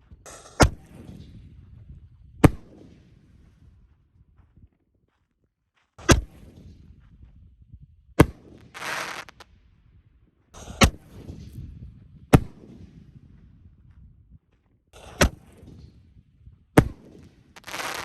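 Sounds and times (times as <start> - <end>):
firework bangs with echo: 8.2 - 9.4, 10.6 - 11.7, 16.8 - 18.0
brief hiss: 8.7 - 9.4.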